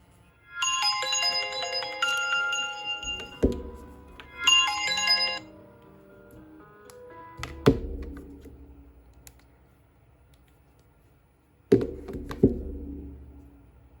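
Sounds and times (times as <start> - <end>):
sharp knocks: 3.2 - 4.4, 11.7 - 13.7.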